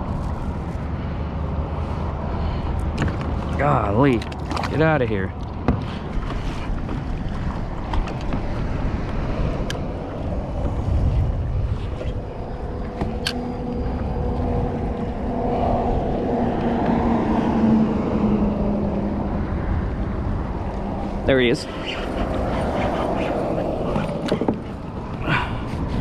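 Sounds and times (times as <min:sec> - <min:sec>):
wind buffeting microphone: 0:00.0 - 0:26.0
low hum: 0:05.3 - 0:26.0.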